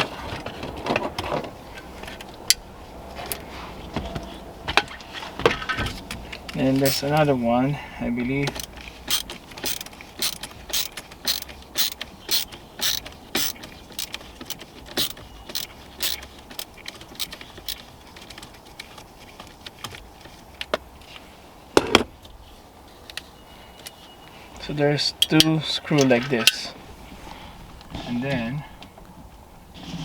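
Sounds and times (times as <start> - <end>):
ratchet clicking: 6.8 - 7.2, 8.5 - 18.4.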